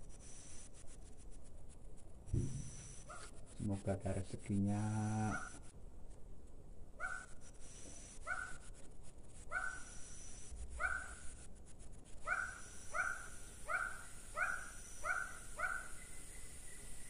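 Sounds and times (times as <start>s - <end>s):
animal calling: 5.0s - 5.7s, 9.5s - 11.3s, 12.2s - 16.5s.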